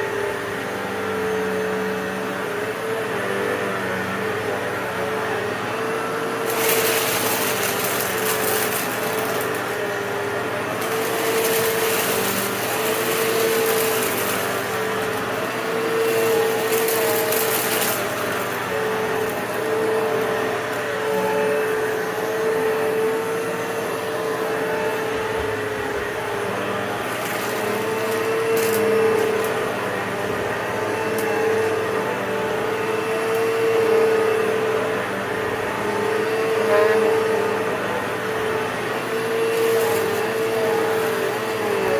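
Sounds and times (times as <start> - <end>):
vacuum cleaner motor whine: 0.0 - 41.9
debris hiss and rattle: 6.5 - 9.8, 10.8 - 15.3, 16.0 - 19.4, 27.1 - 29.6.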